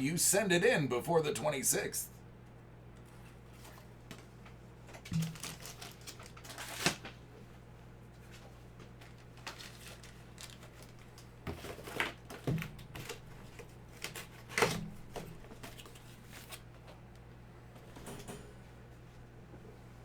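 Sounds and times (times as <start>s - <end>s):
faint steady hum: 0.0s - 20.0s
packaging clicks and rustles: 4.9s - 7.2s, 8.3s - 14.8s.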